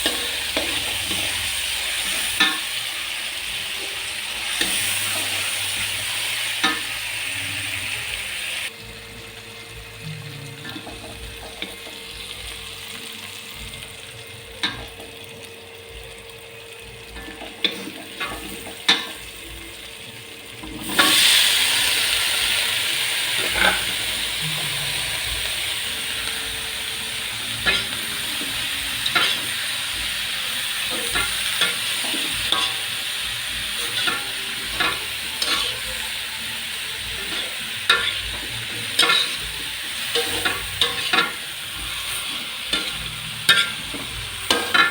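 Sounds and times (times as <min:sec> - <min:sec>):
food sizzling in hot oil: 0:00.0 - 0:44.9
spatula scraping a pan: 0:23.3 - 0:44.9.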